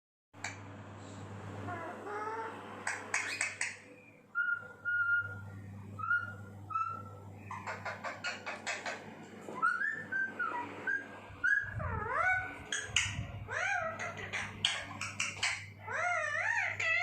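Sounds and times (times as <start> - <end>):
parakeet rasping chatter: 1.7 - 5.3, 6.0 - 17.0
parakeet whistling: 2.1 - 17.0.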